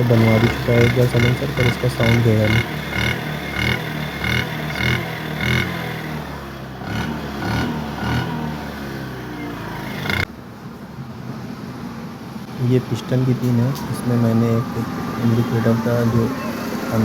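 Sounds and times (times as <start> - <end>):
scooter engine pulsing exhaust: 0.0 - 10.3.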